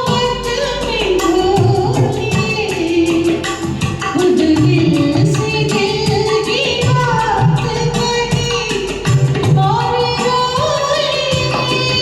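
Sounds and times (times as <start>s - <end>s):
hand drum rhythm: 0.0s - 12.0s.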